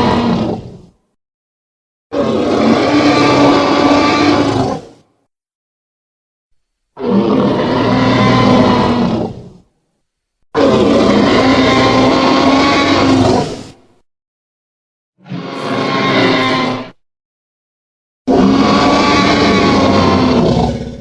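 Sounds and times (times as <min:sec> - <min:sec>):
deep dinosaur roars: 0:00.0 - 0:00.9, 0:02.1 - 0:05.0, 0:07.0 - 0:09.6, 0:10.6 - 0:13.8, 0:15.2 - 0:17.0, 0:18.3 - 0:21.0.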